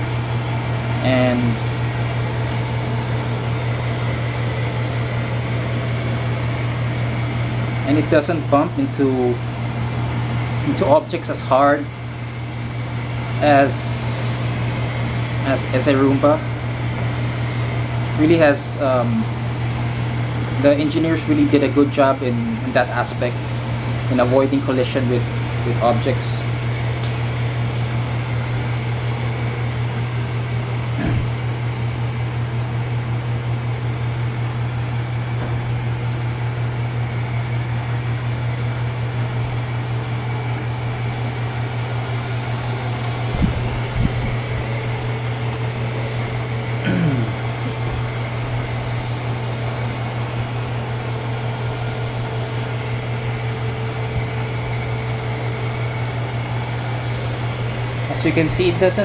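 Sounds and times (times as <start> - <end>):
robot vacuum humming: 0.0 - 59.0.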